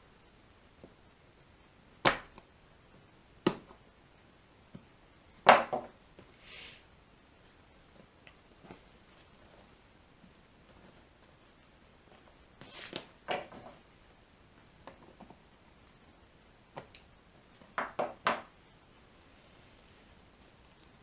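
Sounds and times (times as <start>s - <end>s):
vinyl cover rustling: 7.4s - 13.9s.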